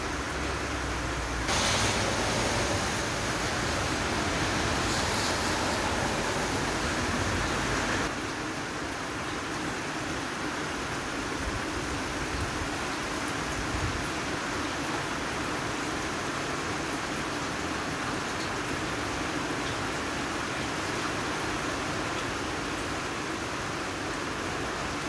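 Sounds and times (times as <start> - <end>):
steady rain falling: 0.0 - 9.5.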